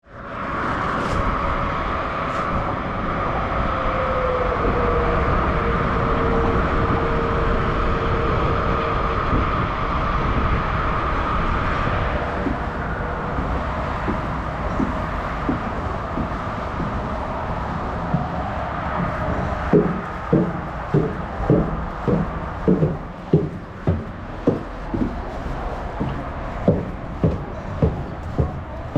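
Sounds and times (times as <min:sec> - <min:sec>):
motorcycle engine rumbling: 0:12.3 - 0:28.9.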